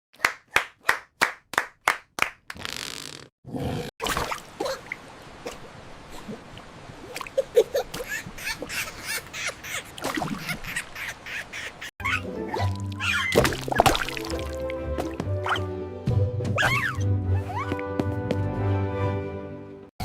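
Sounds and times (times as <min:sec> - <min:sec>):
squeaky animal cries: 0:12.0 - 0:13.4, 0:16.6 - 0:17.8
music: 0:12.0 - 0:19.9.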